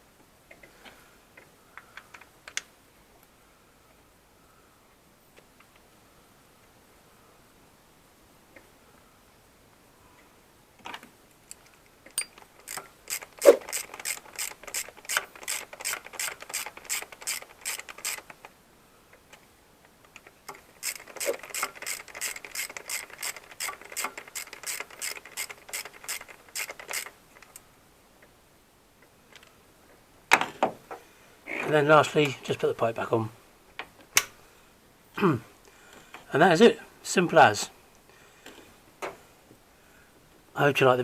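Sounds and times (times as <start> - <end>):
socket ratchet clicking: 11.5 - 18.4, 20.2 - 27.6.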